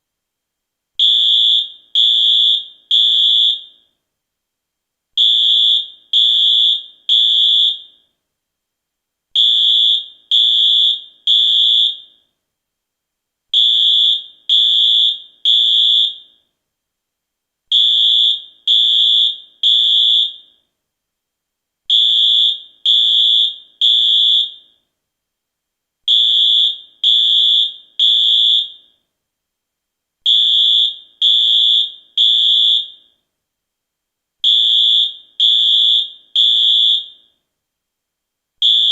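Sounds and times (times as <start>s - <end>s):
fire alarm beeps: 1.0s - 3.9s, 5.2s - 8.1s, 9.4s - 12.3s, 13.6s - 16.5s, 17.7s - 20.7s, 21.9s - 24.8s, 26.1s - 29.0s, 30.3s - 33.2s, 34.4s - 37.4s, 38.6s - 38.9s.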